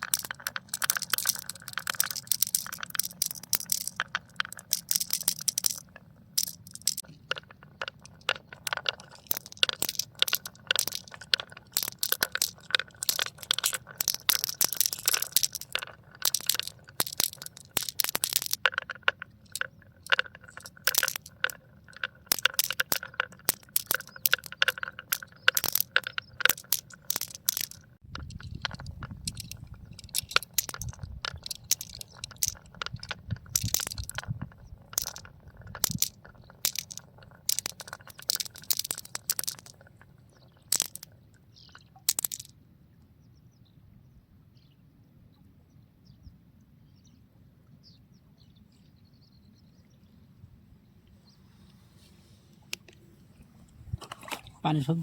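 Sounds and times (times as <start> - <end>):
marbles clacking down a track: 0.0 - 42.5.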